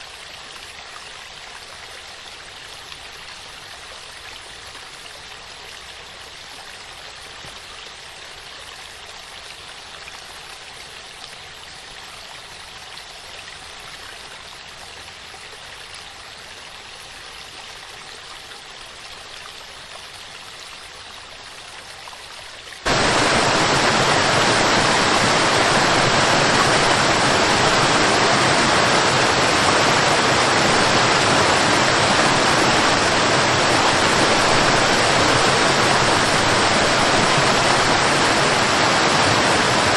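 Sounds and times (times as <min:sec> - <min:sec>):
waterfall rushing water: 0:22.7 - 0:39.9.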